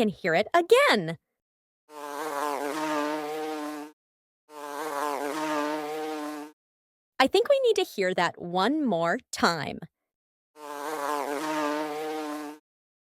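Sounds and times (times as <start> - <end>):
bumblebee buzzing in flight: 1.9 - 6.6, 10.6 - 12.7.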